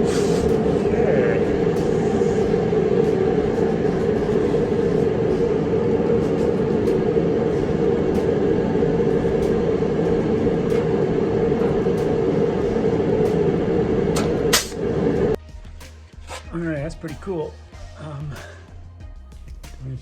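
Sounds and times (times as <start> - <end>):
steady machine drone: 0.0 - 15.4.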